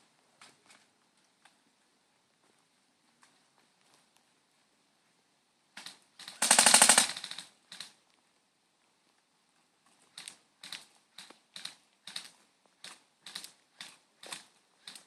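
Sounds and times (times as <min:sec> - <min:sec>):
sharp clicks: 0:05.8 - 0:08.0, 0:10.2 - 0:15.0
airsoft rifle full-auto burst: 0:06.2 - 0:07.8.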